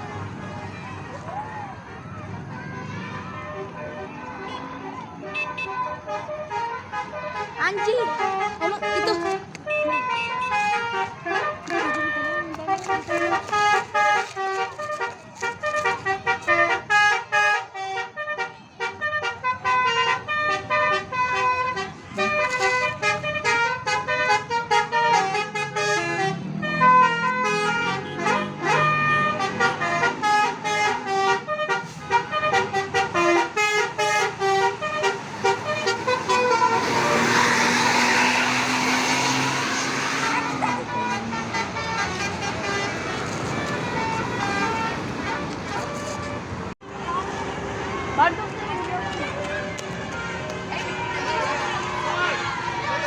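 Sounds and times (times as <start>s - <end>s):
bus horns playing melodic runs: 3.3s - 46.8s, 49.6s - 53.0s.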